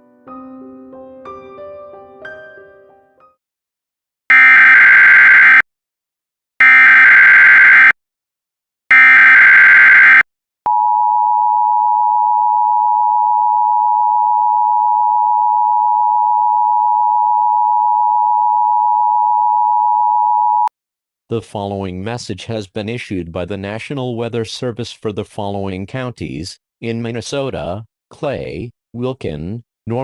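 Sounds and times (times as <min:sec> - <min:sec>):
digital data bursts: 0:08.9 - 0:10.2.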